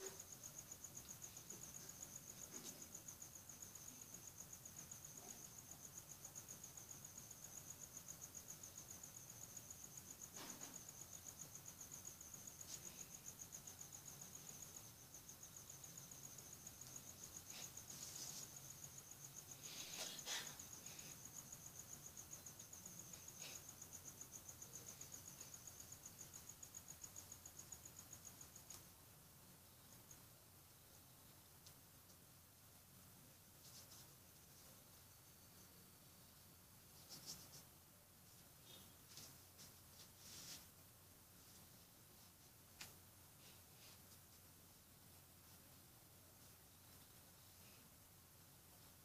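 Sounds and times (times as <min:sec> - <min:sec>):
high-pitched insect trill: 0:00.0 - 0:29.0.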